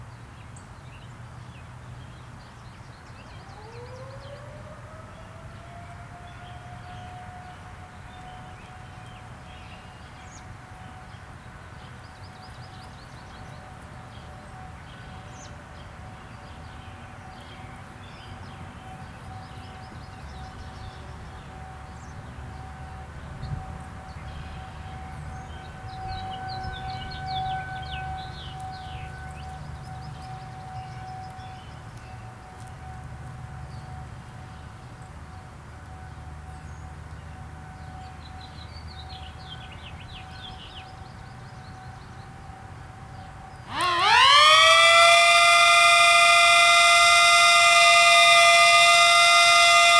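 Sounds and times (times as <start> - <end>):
tornado warning siren: 3.2 - 11.8, 18.8 - 34.1, 42.0 - 49.9
birds chirping: 43.6 - 49.9.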